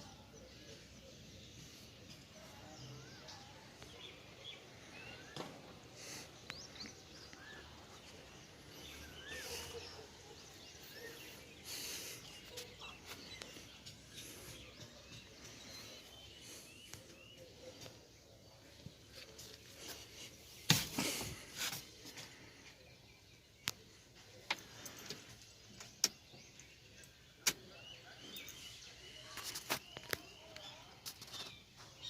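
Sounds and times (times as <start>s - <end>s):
bird chirps: 0.0s - 19.9s.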